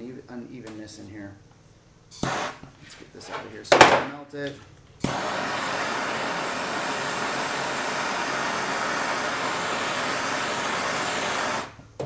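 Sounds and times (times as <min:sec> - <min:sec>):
gas torch flame hissing: 0:02.1 - 0:03.8, 0:05.0 - 0:12.0.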